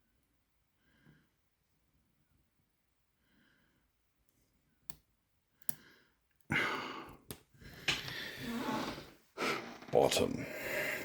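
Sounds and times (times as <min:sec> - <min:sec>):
heavy breathing: 0:05.7 - 0:11.0.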